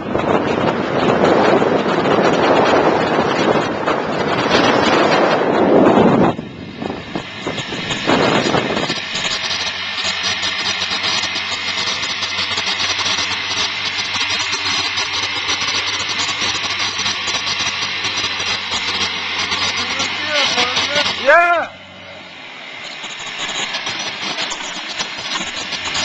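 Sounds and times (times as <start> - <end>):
wind gusts on microphone: 0.0 - 10.5
motor scooter engine running: 0.0 - 26.0.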